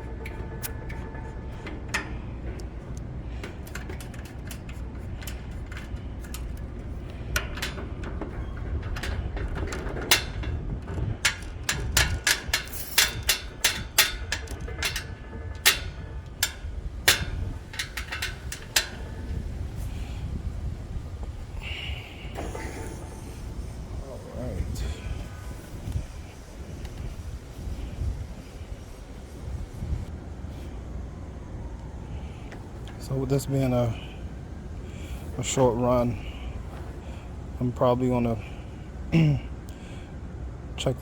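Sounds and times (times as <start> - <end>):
sharp clicks and knocks: 0.0 - 19.4
steady low hum: 0.0 - 41.0.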